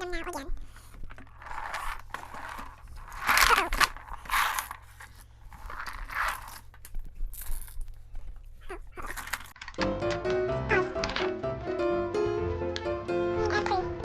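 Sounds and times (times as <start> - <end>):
items rustling and scraping: 0.3 - 9.8.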